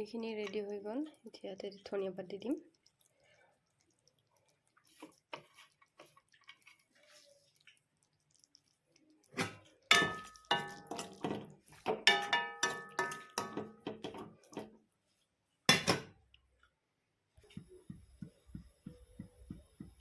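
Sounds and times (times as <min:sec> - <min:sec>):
metal spoon clanking on pot: 0:09.4 - 0:14.7, 0:15.7 - 0:16.1.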